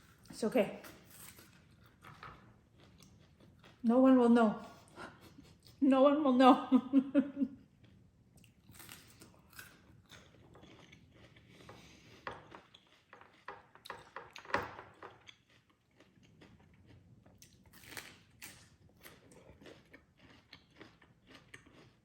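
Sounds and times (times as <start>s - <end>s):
person chewing: 0.9s - 3.8s, 7.8s - 22.0s.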